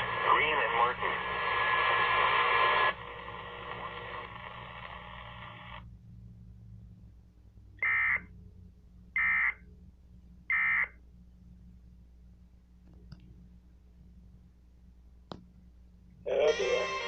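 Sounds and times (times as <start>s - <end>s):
radio hiss: 0.0s - 5.8s.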